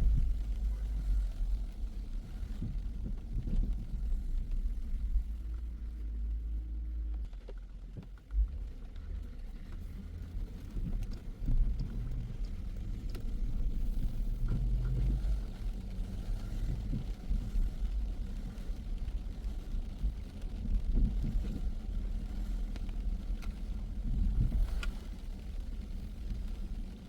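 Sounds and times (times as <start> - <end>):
car engine and road noise: 0.0 - 27.0.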